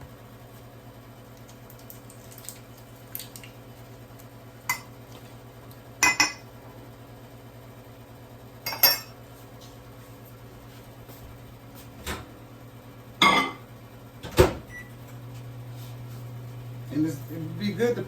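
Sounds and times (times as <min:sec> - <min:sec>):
metal utensil clinking on dish: 0:08.7 - 0:09.1.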